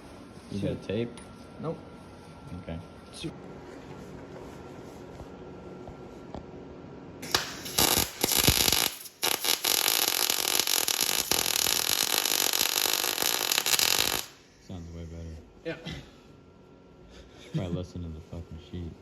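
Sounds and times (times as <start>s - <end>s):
welder arc crackling: 7.2s - 14.4s.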